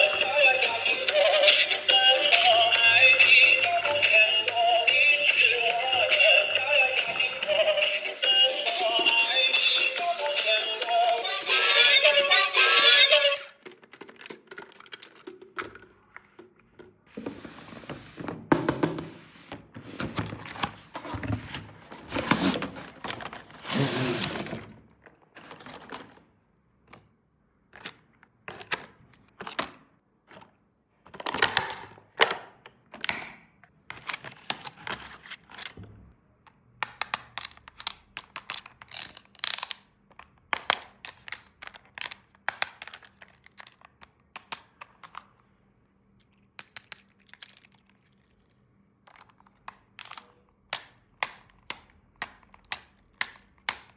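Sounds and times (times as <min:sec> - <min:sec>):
plastic toy pieces clicking: 0:13.4 - 0:16.0, 0:36.8 - 0:45.3, 0:46.6 - 0:48.2.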